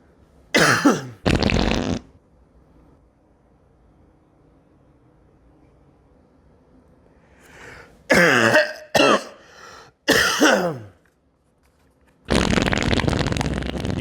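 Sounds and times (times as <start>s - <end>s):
person coughing: 0.6s - 1.2s, 8.1s - 9.5s, 10.1s - 11.0s.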